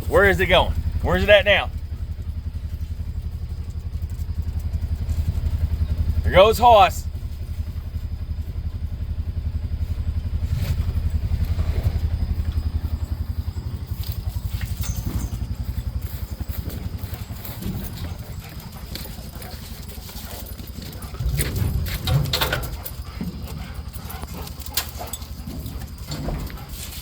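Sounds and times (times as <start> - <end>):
engine running at low revs: 0.0 - 27.0
faint clicks and rustles: 7.2 - 27.0.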